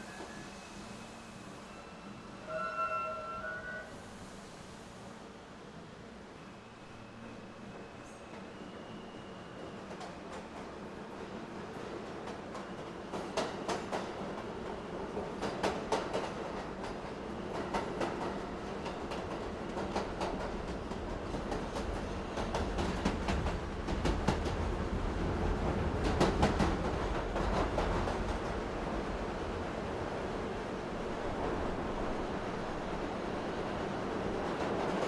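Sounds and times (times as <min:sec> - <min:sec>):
train rumbling on track: 0:07.7 - 0:35.0.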